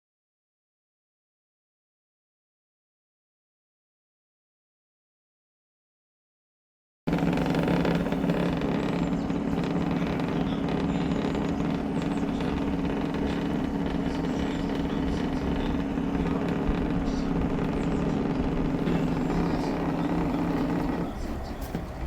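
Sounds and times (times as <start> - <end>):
pressure washer pump humming: 7.1 - 22.0.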